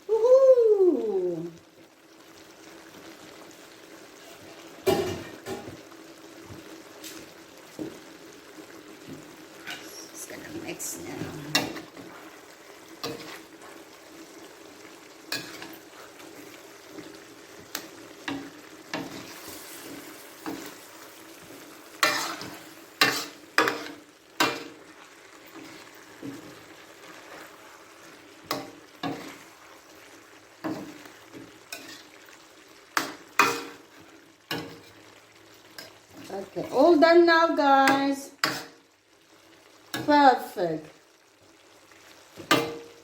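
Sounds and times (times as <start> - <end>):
low sizzle: 0.0 - 43.0
utensil scraping a pan: 11.1 - 13.8, 22.0 - 24.8.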